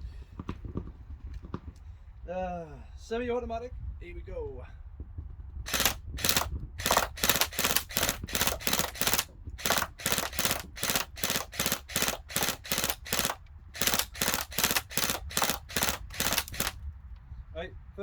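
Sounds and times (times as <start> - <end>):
airsoft gun shots: 5.7 - 16.8.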